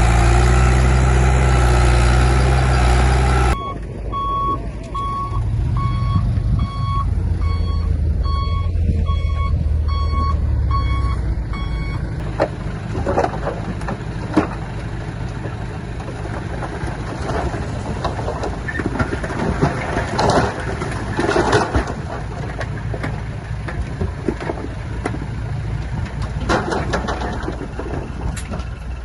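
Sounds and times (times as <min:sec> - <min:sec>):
diesel engine running: 0:00.0 - 0:29.0
reversing alarm beeping: 0:03.6 - 0:12.1
knocks and clanks: 0:12.2 - 0:29.0.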